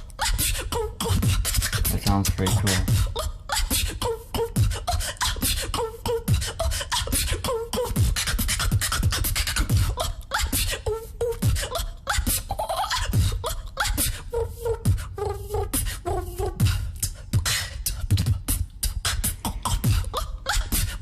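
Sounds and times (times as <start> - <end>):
woman beatboxing: 0.0 - 21.0.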